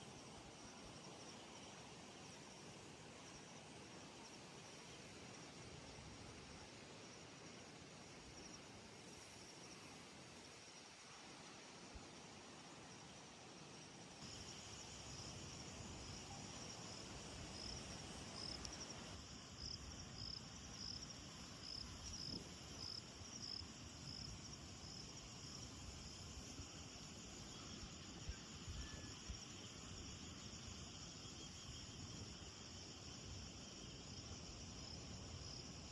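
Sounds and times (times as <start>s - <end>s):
insects chirping: 0.0s - 13.2s, 14.2s - 35.9s
soft background hiss: 0.0s - 35.9s.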